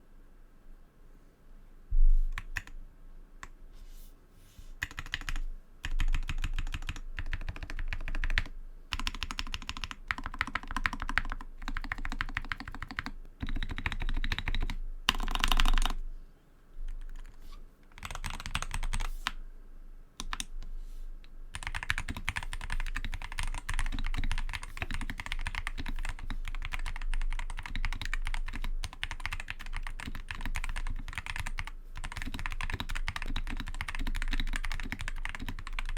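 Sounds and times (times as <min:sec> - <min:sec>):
mechanical keyboard typing clicks: 0:04.8 - 0:16.0, 0:17.0 - 0:19.1, 0:20.2 - 0:20.6, 0:21.5 - 0:35.9.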